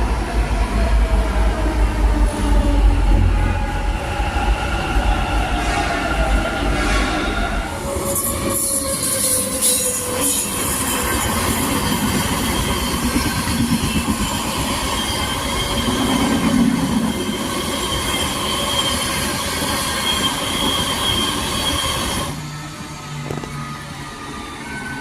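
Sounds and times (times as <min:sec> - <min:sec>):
train rumbling on rails: 0:00.0 - 0:25.0
wheels squealing: 0:06.0 - 0:25.0.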